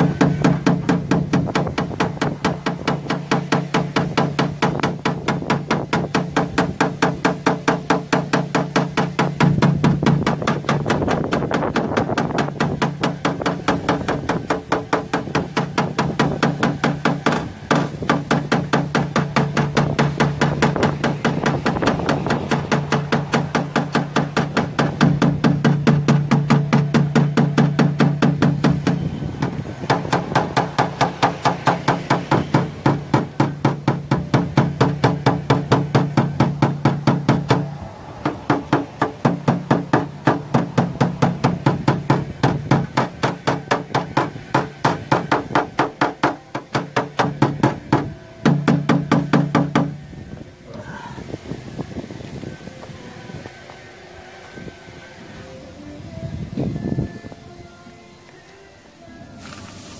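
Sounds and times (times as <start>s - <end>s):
background music: 12.1s - 59.9s.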